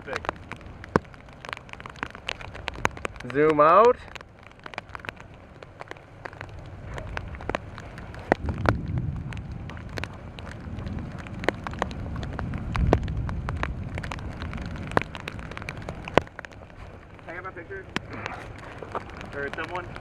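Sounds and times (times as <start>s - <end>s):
rain falling: 0.0s - 20.0s
raindrops ticking close: 0.0s - 20.0s
wind buffeting microphone: 0.0s - 20.0s.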